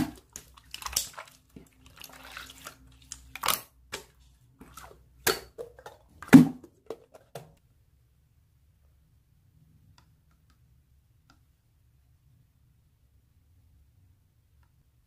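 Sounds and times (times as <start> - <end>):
slime squishing with wet pops: 0.0 - 6.4.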